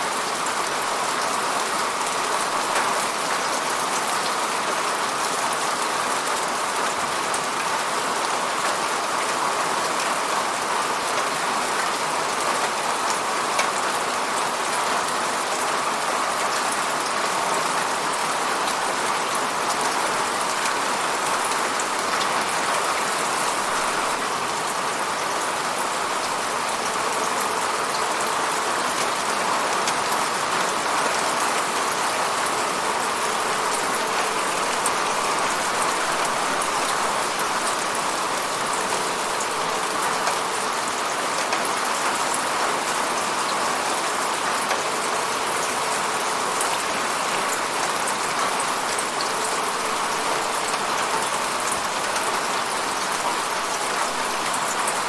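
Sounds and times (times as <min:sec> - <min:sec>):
raindrops ticking on a surface: 0:00.1 - 0:55.0
rain hissing: 0:17.3 - 0:43.3.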